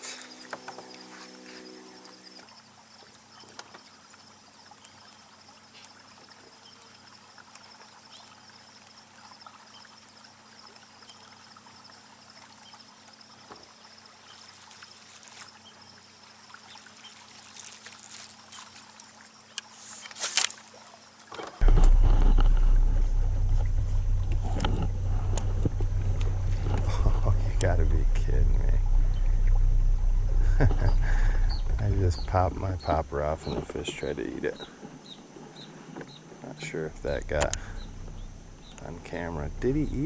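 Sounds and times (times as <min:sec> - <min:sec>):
insect trill: 0:00.0 - 0:40.0
small water sounds: 0:00.0 - 0:40.0
loud low rumble: 0:21.6 - 0:33.6, 0:36.7 - 0:40.0
faint low hum: 0:21.6 - 0:40.0.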